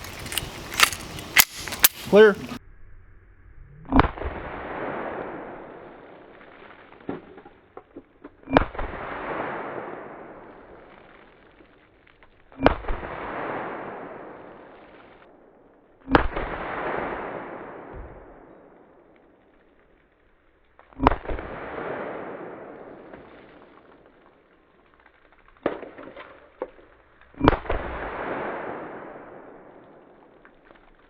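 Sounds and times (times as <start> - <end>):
gunshots with rumbling tail: 0.0 - 2.4
small clicks: 0.0 - 2.6.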